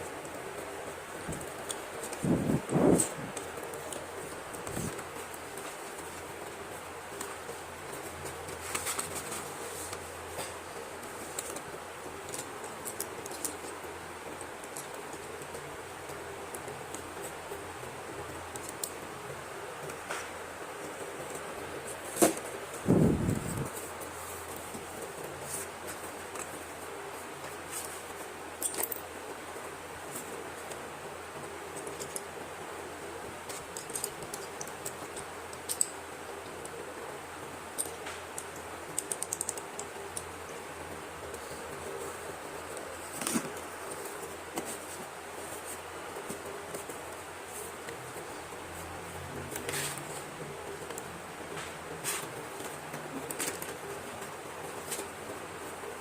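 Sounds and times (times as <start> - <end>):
steady low hum: 0.0 - 56.0
pencils and packets clicking: 11.0 - 17.3, 33.4 - 36.8, 37.7 - 40.3.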